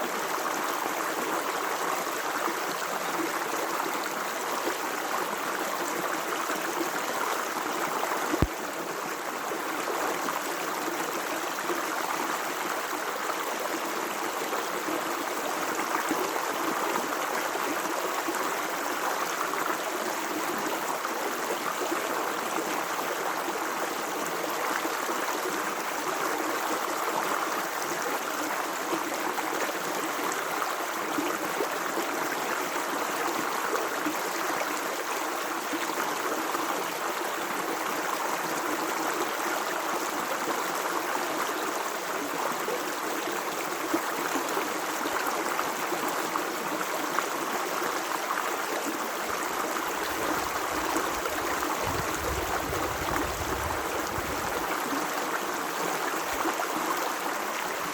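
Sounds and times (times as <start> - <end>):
running water rushing: 49.0 - 57.9.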